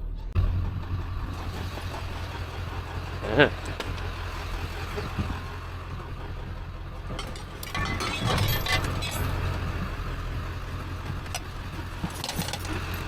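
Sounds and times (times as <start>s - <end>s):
vehicle engine hum: 0.0s - 13.0s
clinking and rattling: 6.9s - 10.0s, 11.0s - 13.0s.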